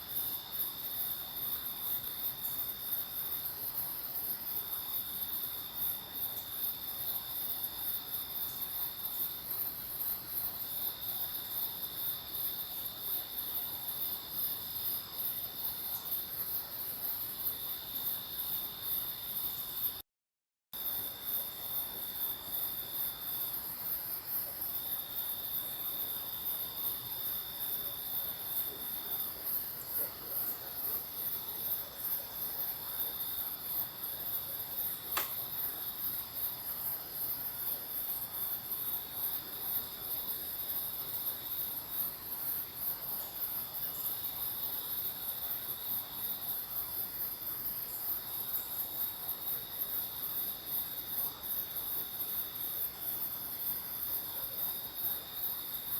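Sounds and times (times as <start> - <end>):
sharp click: 35.2 - 35.4.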